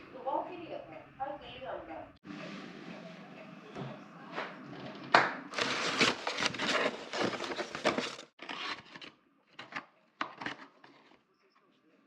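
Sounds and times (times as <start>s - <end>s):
crackling handling noise: 5.5s - 11.2s.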